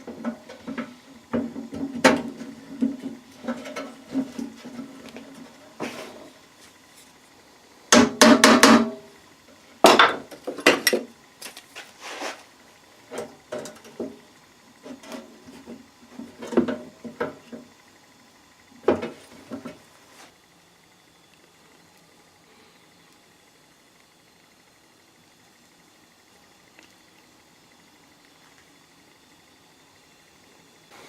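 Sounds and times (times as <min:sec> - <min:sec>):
tools knocking and clanking: 0:09.8 - 0:11.1.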